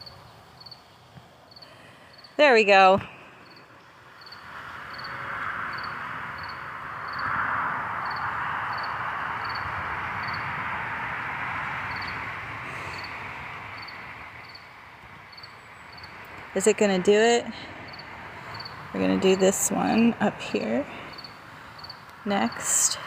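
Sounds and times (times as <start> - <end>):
cricket chirping: 0.0 - 0.8, 1.5 - 2.4, 3.4 - 10.6, 11.9 - 12.2, 12.9 - 13.2, 13.8 - 14.7, 15.3 - 16.2, 17.9 - 18.9, 21.1 - 23.0
rushing noise: 3.1 - 15.4.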